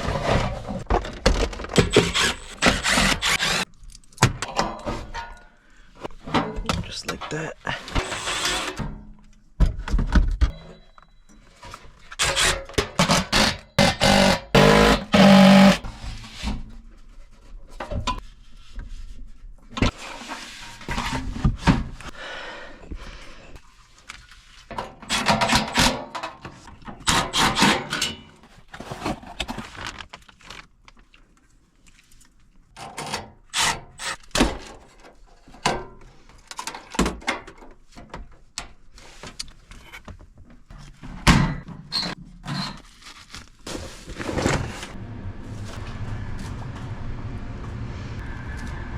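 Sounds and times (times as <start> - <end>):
tools and parts being handled: 0.0 - 14.3, 23.0 - 45.0.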